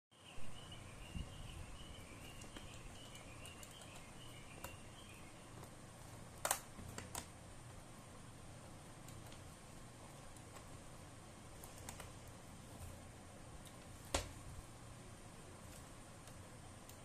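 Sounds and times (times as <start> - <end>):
faint high chirping: 0.1 - 6.2.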